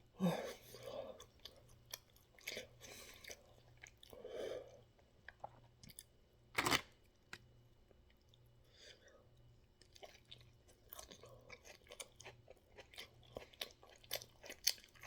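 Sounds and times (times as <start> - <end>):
person chewing food: 1.2 - 4.8, 9.7 - 15.0.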